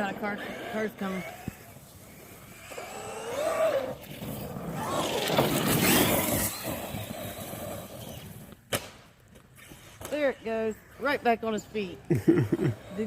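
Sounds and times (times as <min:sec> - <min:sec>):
car passing: 0:00.0 - 0:08.2.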